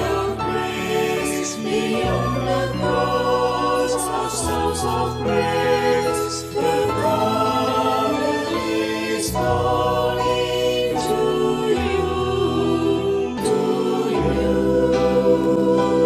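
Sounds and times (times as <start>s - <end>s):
choir singing sustained chords: 0.0s - 16.0s.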